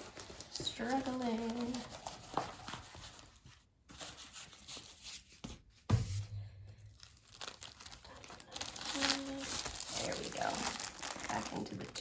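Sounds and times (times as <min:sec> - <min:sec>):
plastic wrapper crinkling: 0:00.0 - 0:03.4, 0:06.8 - 0:12.0.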